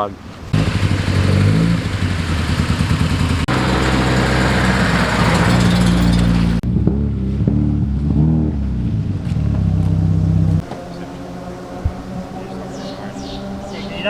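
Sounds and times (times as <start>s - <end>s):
car engine running: 0.5s - 6.7s.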